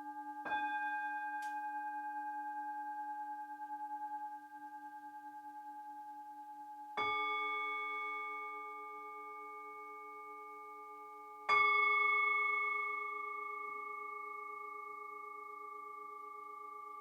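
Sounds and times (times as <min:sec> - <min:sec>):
singing bowl ringing: 0:00.0 - 0:17.0.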